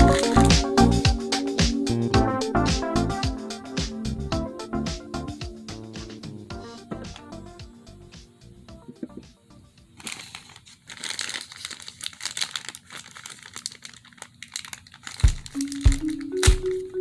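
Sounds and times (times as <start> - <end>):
plastic packaging crinkling and tearing: 0.0 - 0.5, 10.0 - 16.8
music with a steady beat: 0.0 - 10.0, 15.3 - 17.0.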